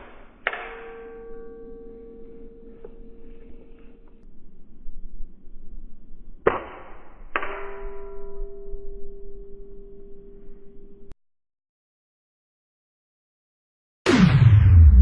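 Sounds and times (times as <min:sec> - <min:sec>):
metal target ringing: 0:00.0 - 0:04.2, 0:06.5 - 0:10.6
pellet striking metal target: 0:00.0 - 0:04.2, 0:06.4 - 0:08.2.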